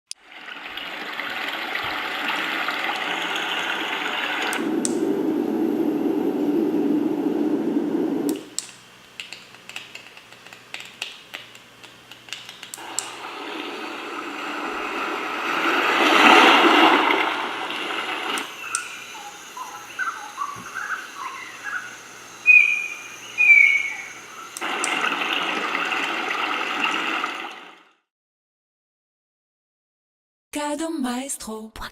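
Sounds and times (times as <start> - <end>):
rushing rain or water: 0.2 - 6.4, 12.8 - 27.9
ocean wave: 0.2 - 8.4, 12.8 - 27.9
campfire crackling: 0.2 - 8.5, 9.2 - 27.7
birdsong: 17.8 - 25.4.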